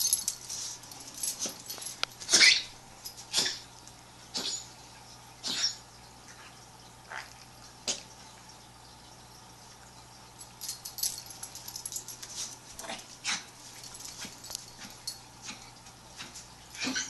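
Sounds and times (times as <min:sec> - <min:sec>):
dog coughing and hacking: 0:03.3 - 0:03.7, 0:04.3 - 0:04.6, 0:05.4 - 0:05.8, 0:14.3 - 0:17.0.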